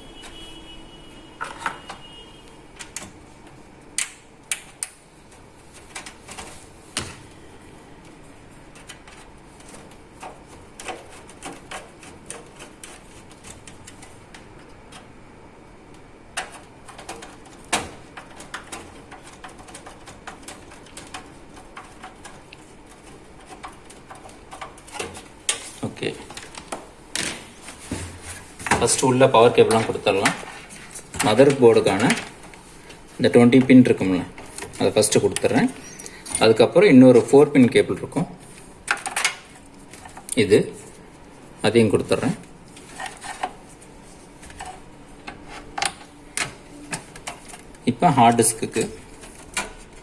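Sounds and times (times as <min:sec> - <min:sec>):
tools tapping on computer case: 0:16.3 - 0:29.0
metal and plastic parts clattering: 0:16.3 - 0:37.8, 0:38.8 - 0:40.5.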